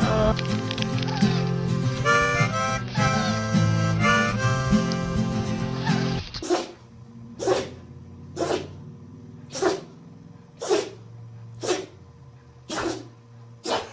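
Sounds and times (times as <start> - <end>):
dog sneezing: 5.8 - 6.8, 7.4 - 7.8, 8.4 - 8.8, 9.5 - 9.9, 10.6 - 11.0, 11.6 - 12.0, 12.7 - 13.9.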